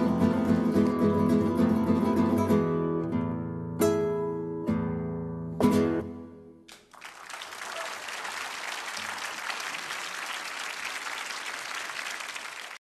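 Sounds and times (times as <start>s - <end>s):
applause: 6.7s - 12.9s.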